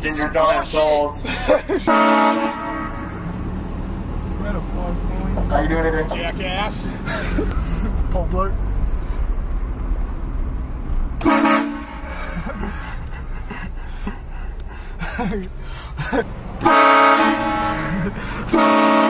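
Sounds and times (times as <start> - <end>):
train horn blasting: 1.9 - 3.2, 11.2 - 12.1, 16.6 - 17.9, 18.5 - 19.0.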